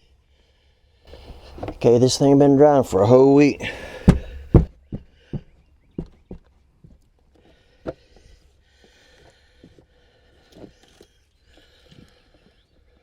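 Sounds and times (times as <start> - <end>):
light knocks and thuds: 1.1 - 1.9, 3.6 - 6.4
carpet rustling: 1.1 - 4.7.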